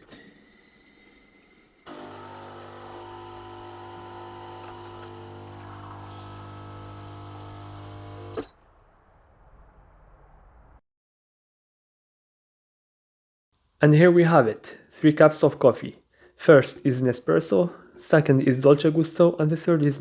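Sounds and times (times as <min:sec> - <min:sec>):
coffee machine pump humming: 0:01.9 - 0:08.5.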